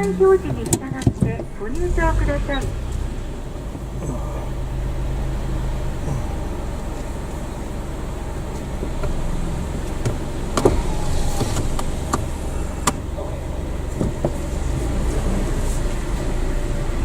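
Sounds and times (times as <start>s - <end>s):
car engine and road rumble: 0.0s - 17.0s
sharp clicks and knocks: 9.9s - 13.1s.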